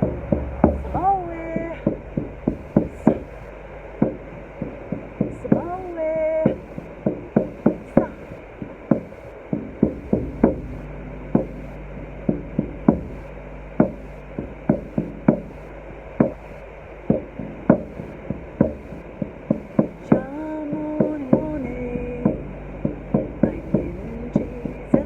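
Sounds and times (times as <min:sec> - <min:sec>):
hand-struck percussion knocking: 0:00.0 - 0:05.8, 0:06.4 - 0:25.0
faint low drone: 0:00.0 - 0:25.0.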